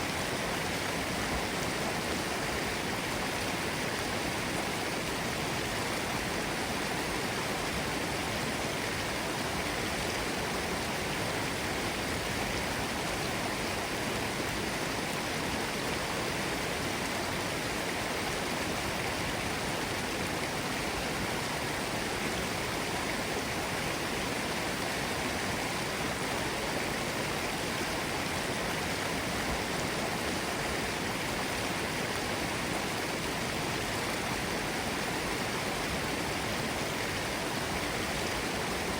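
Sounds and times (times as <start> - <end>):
stream rushing over rocks: 0.0 - 38.9.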